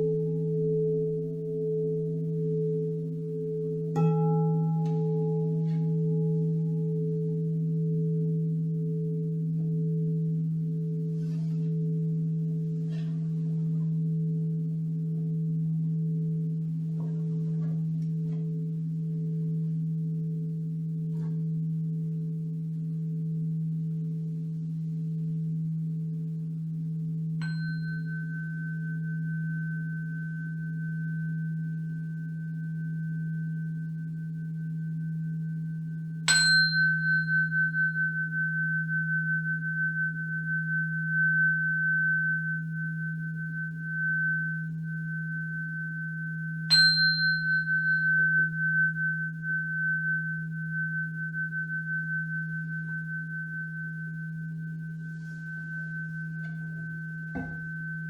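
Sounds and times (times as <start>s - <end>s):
low sustained humming tone: 0.0s - 58.0s
struck metal tone ringing: 36.2s - 58.0s.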